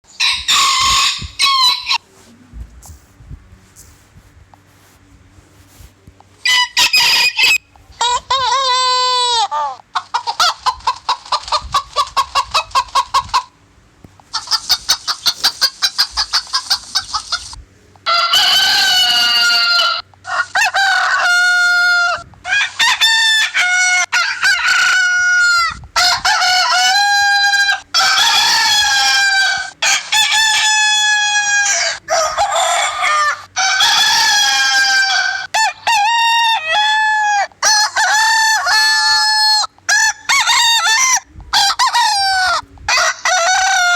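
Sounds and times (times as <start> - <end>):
roosters crowing: 0.1 - 2.3, 6.4 - 10.6, 18.0 - 43.9
chickens clucking: 5.6 - 43.9.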